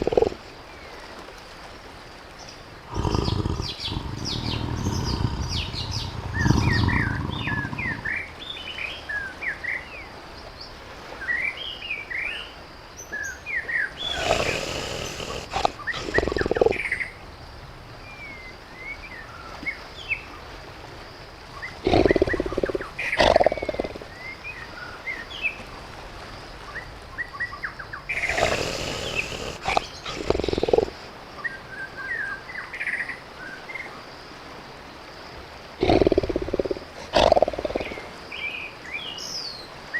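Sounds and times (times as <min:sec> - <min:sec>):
tiger growling and roaring: 0:00.0 - 0:00.4, 0:02.9 - 0:08.6, 0:14.0 - 0:17.0, 0:21.7 - 0:24.2, 0:28.1 - 0:31.1, 0:35.8 - 0:38.2
birds chirping: 0:02.9 - 0:09.3, 0:13.8 - 0:17.2, 0:21.6 - 0:24.5, 0:27.5 - 0:31.1.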